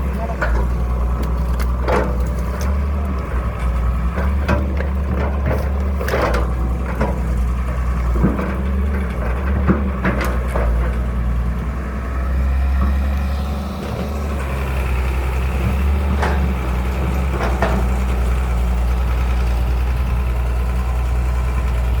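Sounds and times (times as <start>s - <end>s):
sharp knocks and clanks: 0.0s - 11.1s
diesel engine droning: 0.0s - 22.0s.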